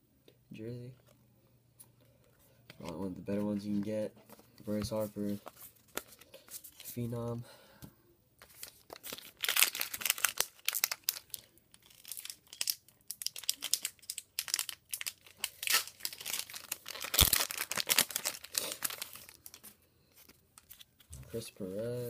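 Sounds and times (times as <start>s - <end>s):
cards being handled: 1.8s - 7.1s, 8.4s - 11.2s, 13.4s - 22.0s
card pack wrapper crinkling: 4.6s - 7.0s, 8.4s - 21.2s
wrapper ripping: 8.5s - 21.0s.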